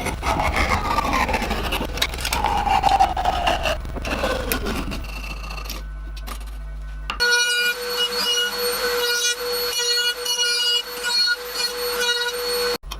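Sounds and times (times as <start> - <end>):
hand tool scraping wood: 0.0 - 5.6
low hum: 0.0 - 7.2.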